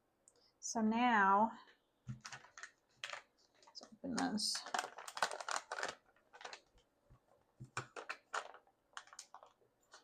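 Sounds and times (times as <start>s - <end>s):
plastic packet crinkling: 2.2s - 7.0s, 7.6s - 10.0s.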